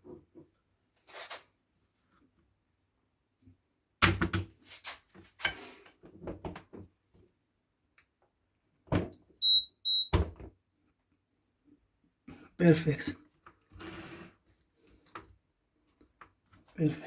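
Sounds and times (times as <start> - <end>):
short high electronic beeps: 9.4 - 10.1.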